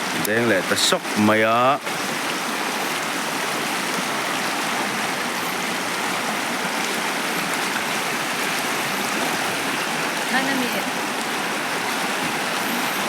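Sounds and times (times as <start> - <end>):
flowing river water: 0.0 - 13.0.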